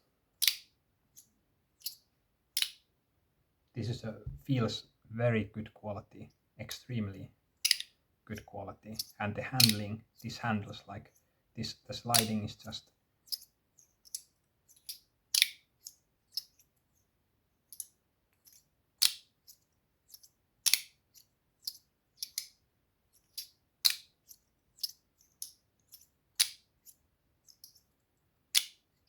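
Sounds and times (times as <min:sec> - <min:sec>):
metal fidget slider clicking: 0:07.6 - 0:07.9, 0:09.0 - 0:09.9, 0:12.1 - 0:12.5.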